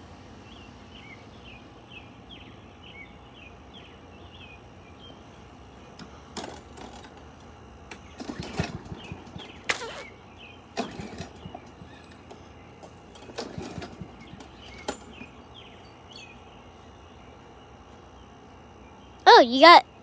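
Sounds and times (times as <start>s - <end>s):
engine sputtering: 5.8s - 16.3s
recoil cord yanks: 7.9s - 10.1s, 10.8s - 15.4s.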